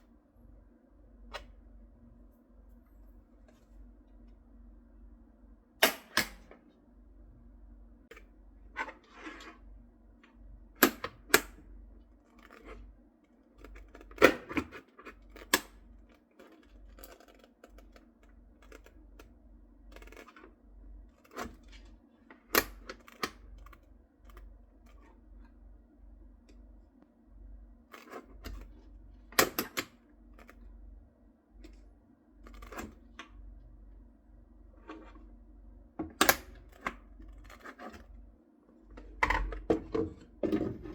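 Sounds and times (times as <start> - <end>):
faint hum: 0.0 - 14.2.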